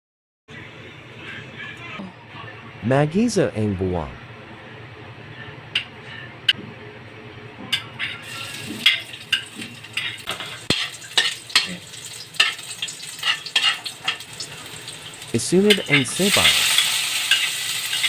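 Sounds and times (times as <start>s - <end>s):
garlic sizzling in oil: 8.2s - 18.0s
spatula scraping and tapping pan: 8.8s - 11.8s, 13.2s - 14.2s.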